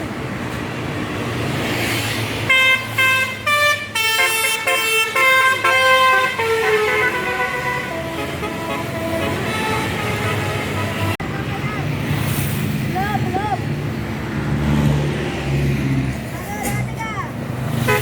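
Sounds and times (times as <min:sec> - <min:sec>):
bus engine rumble: 0:00.0 - 0:18.0
multi-tone musical bus horn: 0:02.5 - 0:11.3, 0:17.8 - 0:18.0.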